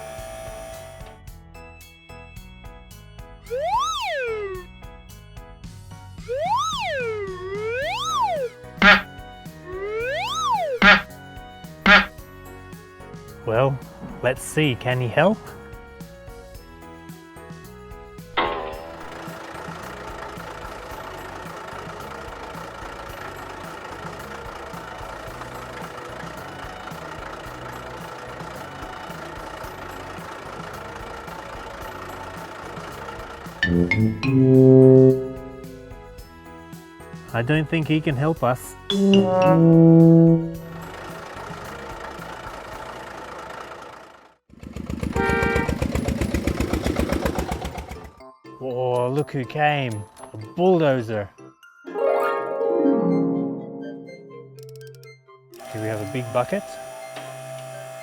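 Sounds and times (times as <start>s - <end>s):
short horn-like tone: 6.3s - 9.1s, 9.7s - 11.1s, 11.8s - 12.1s, 33.6s - 35.9s, 38.9s - 41.0s
truck engine running: 40.7s - 48.1s.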